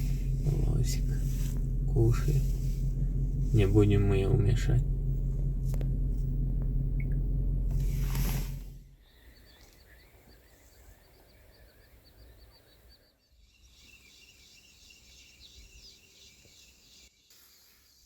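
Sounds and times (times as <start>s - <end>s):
low rumble: 0.0s - 9.3s
bird calls: 9.0s - 17.1s.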